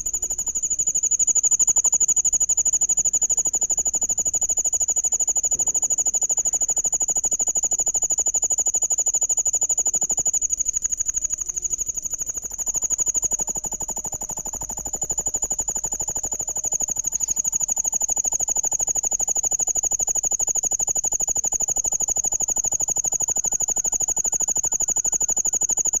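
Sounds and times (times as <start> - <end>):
insect trilling: 0.0 - 20.1.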